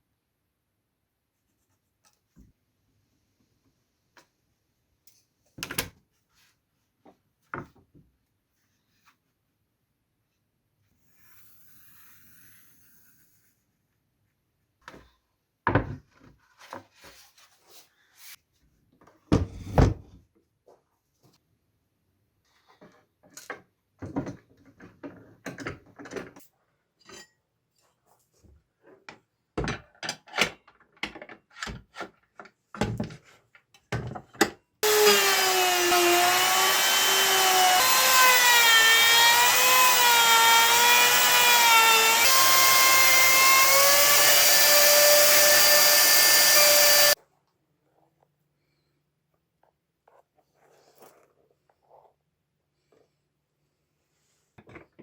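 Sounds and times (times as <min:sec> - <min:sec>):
power tool cutting wood: 0:34.8 - 0:47.2.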